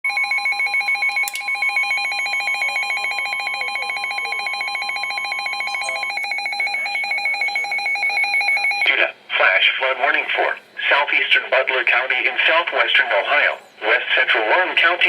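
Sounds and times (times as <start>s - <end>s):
pulsing electronic alarm warble: 0.1s - 8.9s
steady warning tone: 0.1s - 8.9s.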